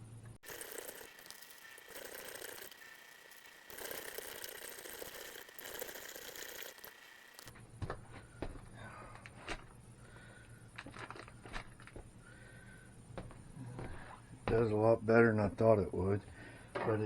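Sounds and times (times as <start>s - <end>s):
meat grinder whirring and whining: 0.4s - 7.5s.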